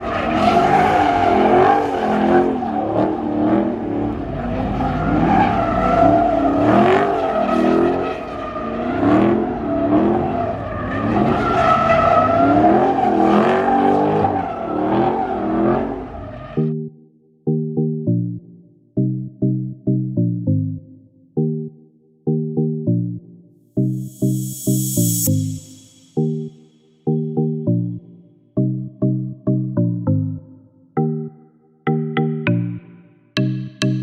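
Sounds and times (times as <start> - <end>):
car engine revving: 0.0 - 16.7
tires squealing: 0.0 - 16.7.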